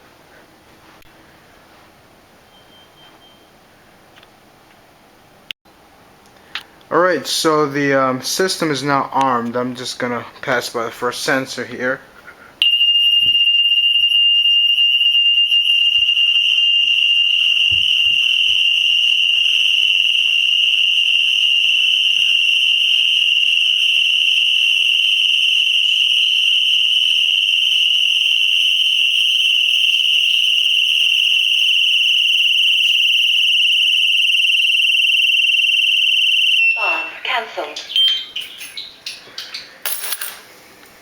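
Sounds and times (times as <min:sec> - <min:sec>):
high-pitched alarm siren: 0:12.6 - 0:37.2.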